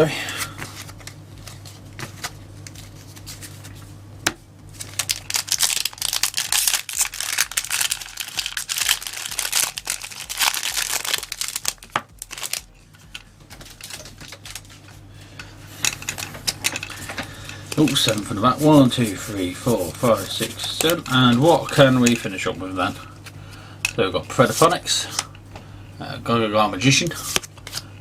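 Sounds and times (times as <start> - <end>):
foil pack tearing: 4.7 - 15.0, 15.9 - 23.1
foil crinkling: 4.7 - 25.4.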